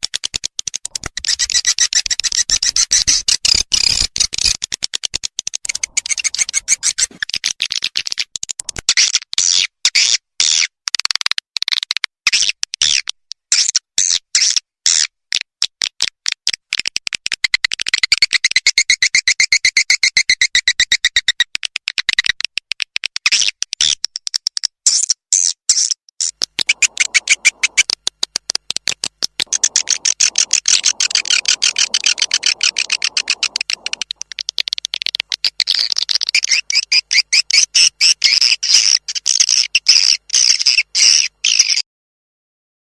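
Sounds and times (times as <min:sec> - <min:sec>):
bird chirps and clicks: 0:00.0 - 0:13.7, 0:15.3 - 0:41.8
bird trilling twitter: 0:05.7 - 0:07.2, 0:26.6 - 0:27.8, 0:29.5 - 0:34.2.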